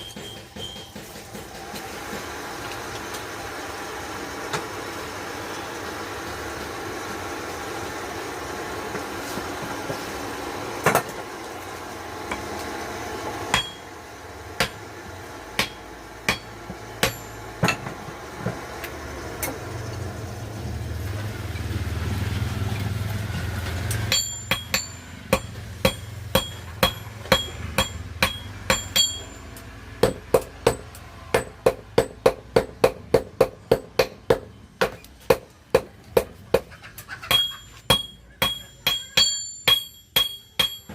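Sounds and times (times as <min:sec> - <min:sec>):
hammer striking metal: 0:13.5 - 0:13.9, 0:14.6 - 0:14.8, 0:15.6 - 0:18.0, 0:24.1 - 0:36.6, 0:37.3 - 0:40.9.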